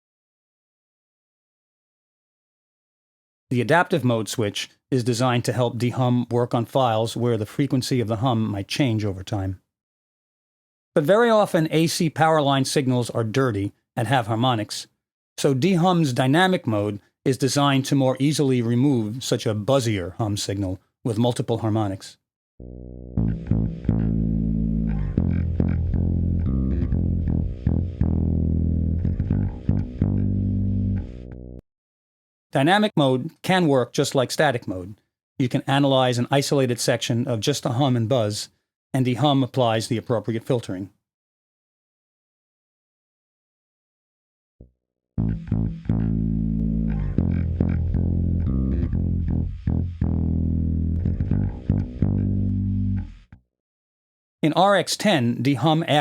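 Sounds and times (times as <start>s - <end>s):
electric bass guitar plucked notes: 22.6s - 31.6s, 45.2s - 53.3s.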